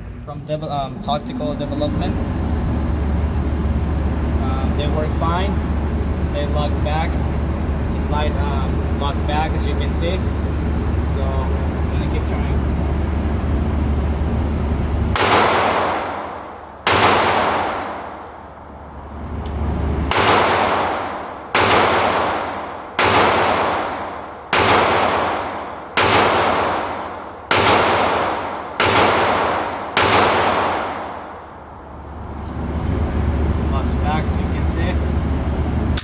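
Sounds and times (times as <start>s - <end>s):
pistol shots: 15.1s - 18.3s, 20.1s - 31.4s.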